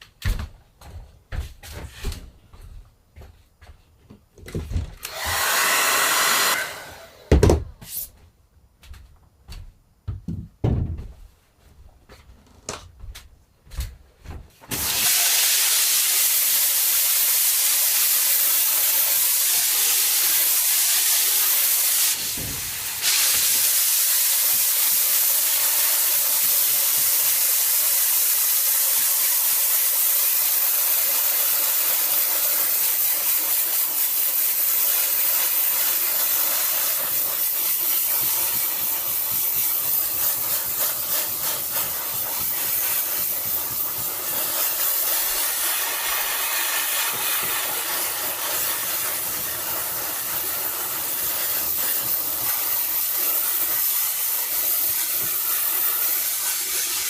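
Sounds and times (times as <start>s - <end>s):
spray gun hissing: 5.1s - 7.0s, 14.7s - 57.0s.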